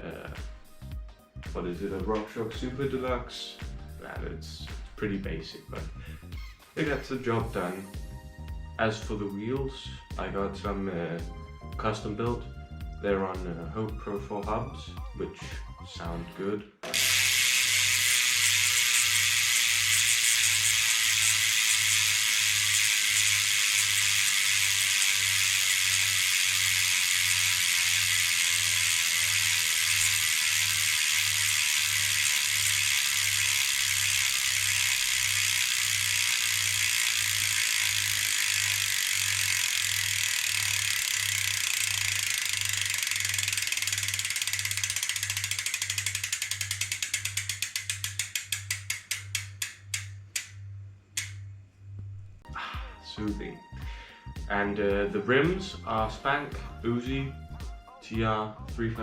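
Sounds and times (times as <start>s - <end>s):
bicycle freehub buzzing: 5.8s - 7.8s, 16.8s - 52.7s.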